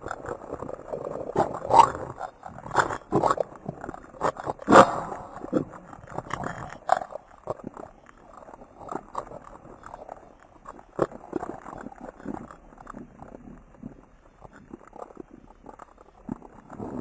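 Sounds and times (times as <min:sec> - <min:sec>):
irregular crackling and clicking: 0:00.0 - 0:17.0
sharp pops: 0:04.6 - 0:07.1.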